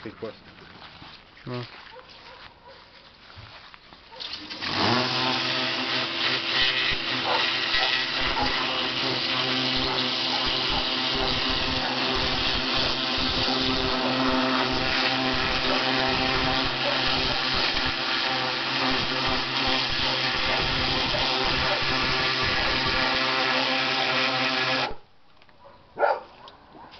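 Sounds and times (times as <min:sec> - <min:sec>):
electric pressure washer running: 0:04.3 - 0:25.1.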